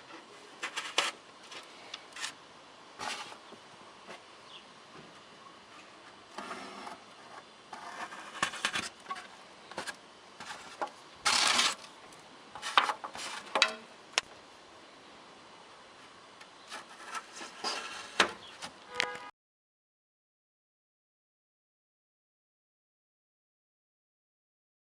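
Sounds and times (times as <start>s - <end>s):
rustling of handled objects: 0.0s - 2.4s, 5.1s - 13.9s.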